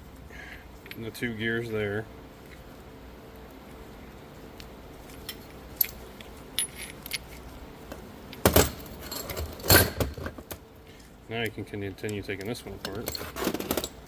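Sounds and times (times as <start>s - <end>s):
metal gears clinking: 5.2s - 7.4s.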